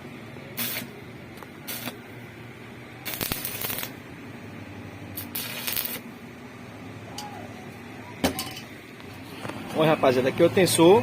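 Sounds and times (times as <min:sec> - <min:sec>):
steady low hum: 0:00.0 - 0:11.0
short hissing bursts: 0:00.6 - 0:00.9, 0:01.7 - 0:02.0.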